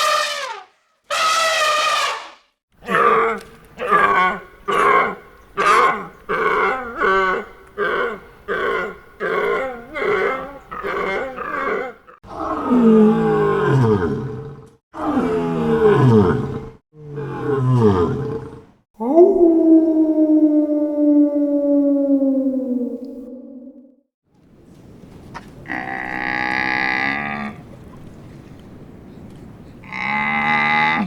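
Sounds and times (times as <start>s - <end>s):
large animal calling: 0.0s - 3.2s.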